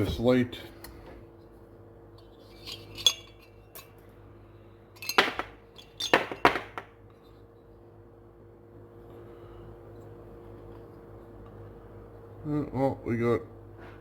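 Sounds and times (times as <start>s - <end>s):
faint hum: 0.0s - 6.1s, 6.9s - 14.0s
metal tools clinking and clattering: 2.4s - 4.0s, 5.0s - 6.8s.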